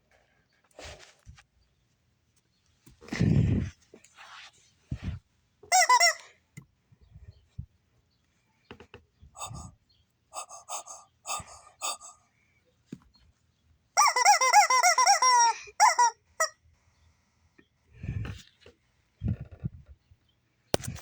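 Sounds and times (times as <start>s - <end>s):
honking squawks: 5.7s - 6.3s.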